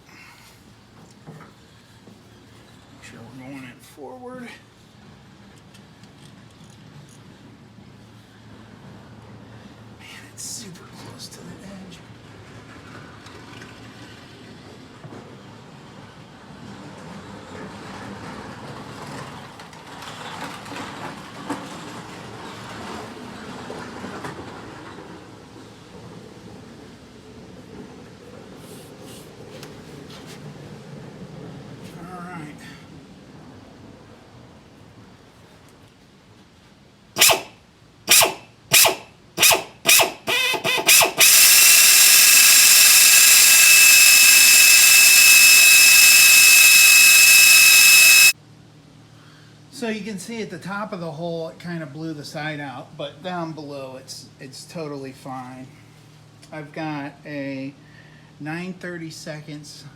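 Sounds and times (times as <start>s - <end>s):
power drill grinding: 37.2s - 37.5s, 38.1s - 48.4s.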